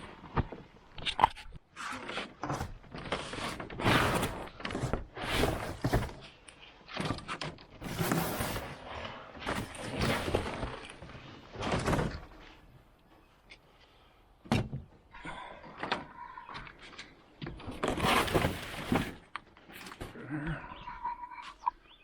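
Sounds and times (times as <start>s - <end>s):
boxes scraping: 1.8s - 12.7s, 17.5s - 20.2s.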